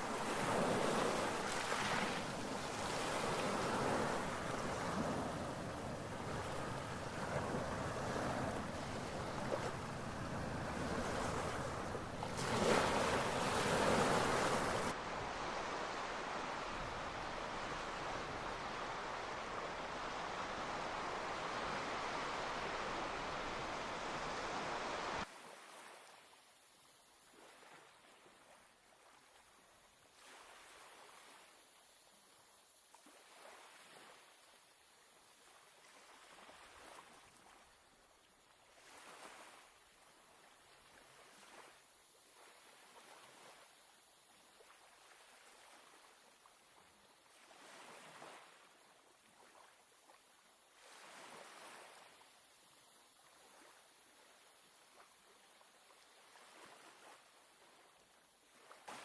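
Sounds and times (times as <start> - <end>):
sea surf washing in: 0.0 - 25.3
wind buffeting microphone: 2.2 - 14.9.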